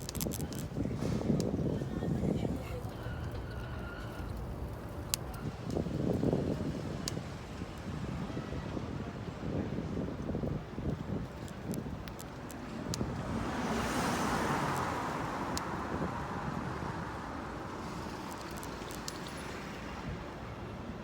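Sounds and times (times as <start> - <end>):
light clicks: 10.8 - 13.3, 18.0 - 19.7
vehicle passing by: 13.0 - 18.7.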